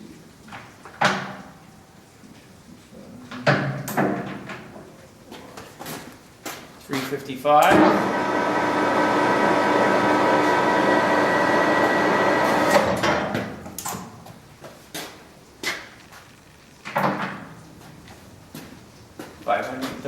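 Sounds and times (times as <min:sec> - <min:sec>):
machine clunks: 0:07.6 - 0:08.0
lathe gear whine: 0:07.8 - 0:12.9.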